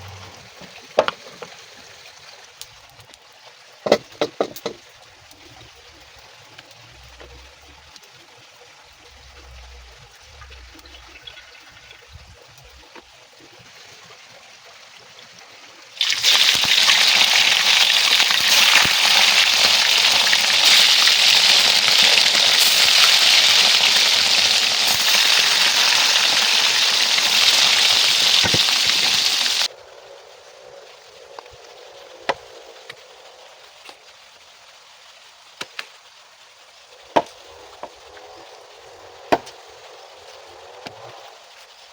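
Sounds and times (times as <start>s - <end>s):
water running: 16.0s - 29.7s.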